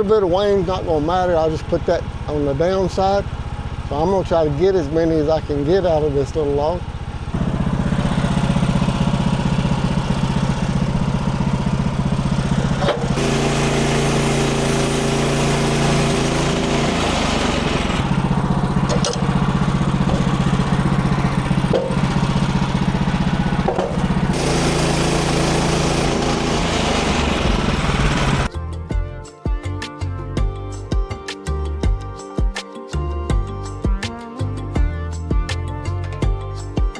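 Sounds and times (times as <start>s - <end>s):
sawmill gas engine running: 0.0s - 28.5s.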